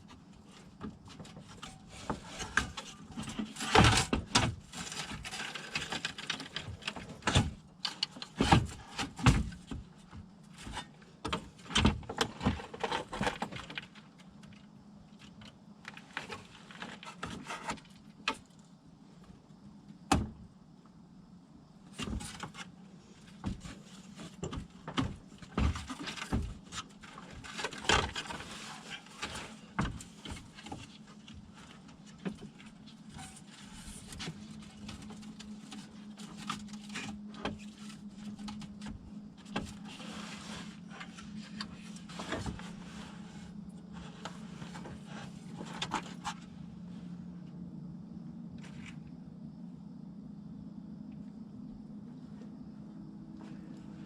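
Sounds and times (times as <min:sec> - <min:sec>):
steady low hum: 0:17.8 - 0:54.0.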